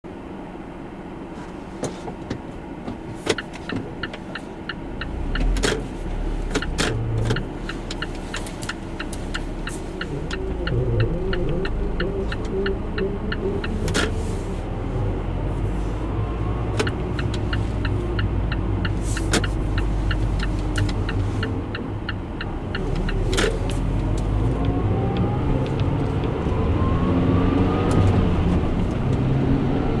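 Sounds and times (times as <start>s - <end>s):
driveline clicking: 3.3s - 15.0s, 16.0s - 26.5s
rising whine: 23.9s - 29.9s.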